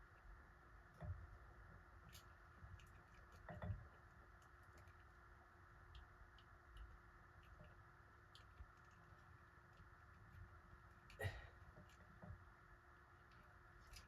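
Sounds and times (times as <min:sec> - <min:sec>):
faint clicks and taps: 0:00.0 - 0:12.6
low steady hum: 0:00.0 - 0:14.0.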